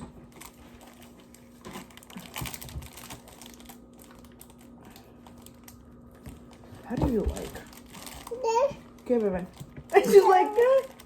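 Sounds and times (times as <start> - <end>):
plastic packaging crackling: 0.0 - 11.0.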